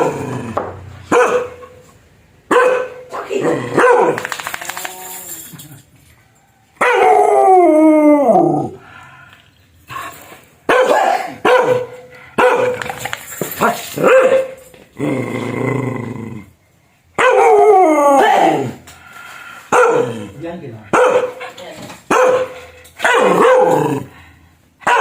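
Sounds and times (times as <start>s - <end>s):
dog barking fiercely: 1.1s - 1.8s, 2.5s - 4.4s, 6.8s - 7.2s, 10.7s - 14.6s, 17.2s - 18.8s, 19.7s - 24.1s, 24.8s - 25.0s.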